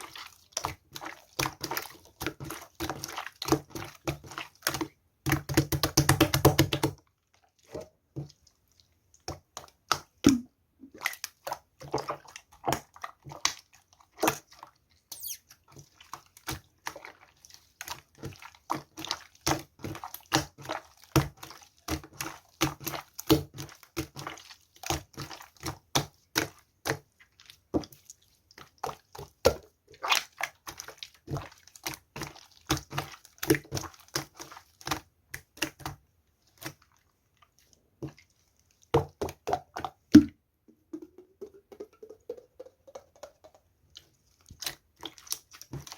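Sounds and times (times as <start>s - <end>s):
short rising squeak: 15.1s - 15.4s.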